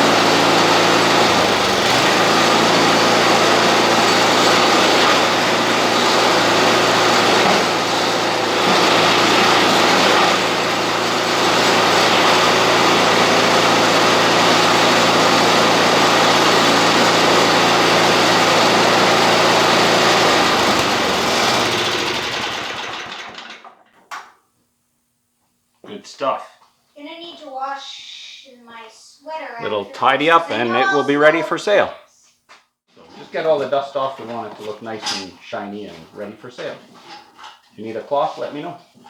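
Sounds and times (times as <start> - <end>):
small gasoline engine idling: 0.0 - 23.5.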